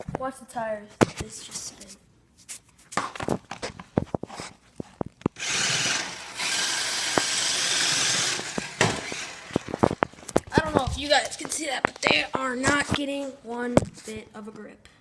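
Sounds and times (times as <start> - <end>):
toy car motor whirring: 5.4 - 10.0.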